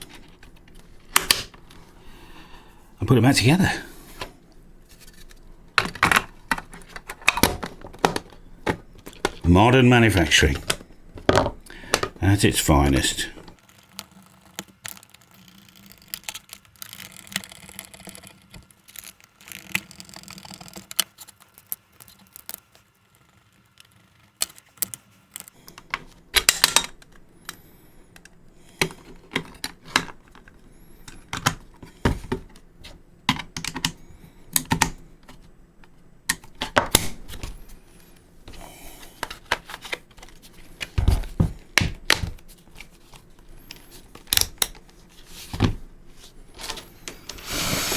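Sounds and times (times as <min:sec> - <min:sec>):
plastic case parts clicking: 0:05.0 - 0:09.5, 0:33.3 - 0:34.0.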